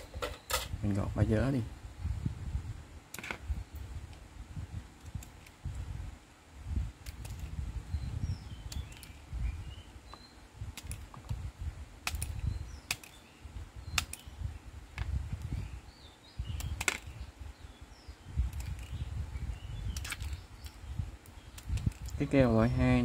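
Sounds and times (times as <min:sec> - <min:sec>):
small birds chirping: 0:04.8 - 0:23.0
blade trimming clicks and snaps: 0:12.0 - 0:13.2, 0:14.0 - 0:14.3.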